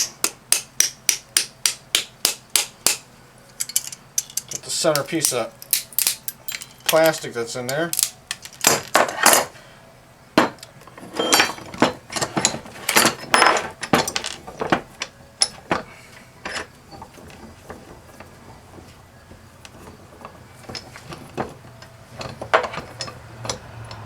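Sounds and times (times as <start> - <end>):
metal hand tools clinking on pump parts: 3.5 - 9.4, 10.6 - 18.3, 19.6 - 24.0.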